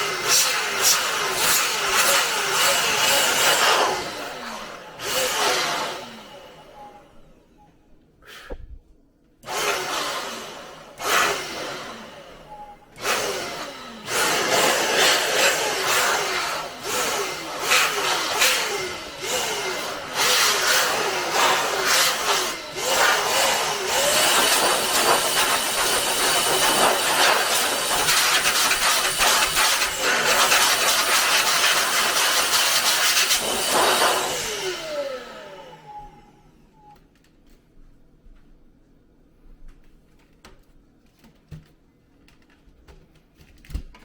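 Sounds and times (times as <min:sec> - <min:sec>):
air blower blasting: 0:00.0 - 0:06.8, 0:09.4 - 0:36.3.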